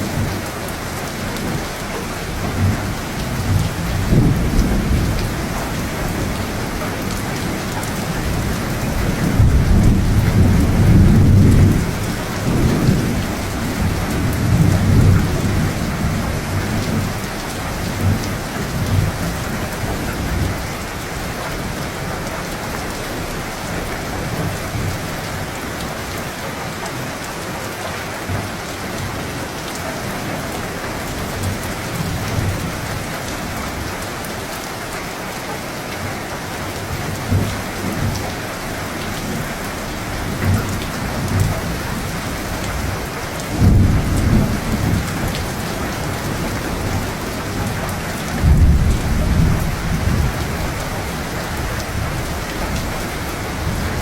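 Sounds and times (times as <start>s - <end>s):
heavy rain: 0.0s - 54.0s
rolling thunder: 2.2s - 21.9s, 39.2s - 54.0s.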